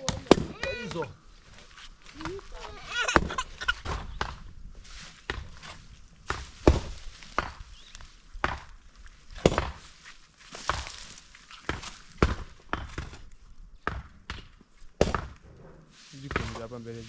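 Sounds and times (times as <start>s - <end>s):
chopping blows: 0.0s - 1.0s.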